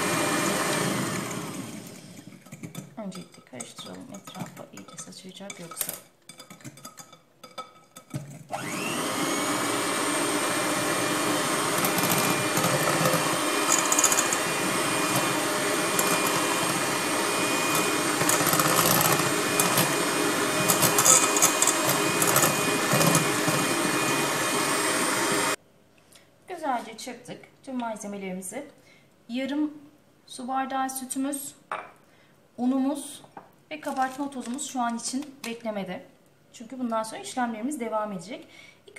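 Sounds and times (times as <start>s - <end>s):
electric mixer whining: 0.0s - 2.4s, 8.5s - 25.6s.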